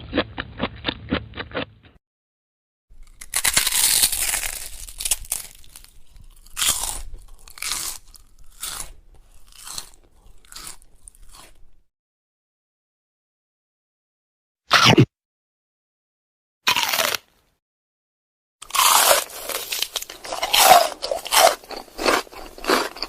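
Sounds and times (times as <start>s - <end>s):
crunchy chewing: 0.0s - 2.0s, 3.0s - 11.8s, 16.7s - 17.3s, 18.6s - 23.0s.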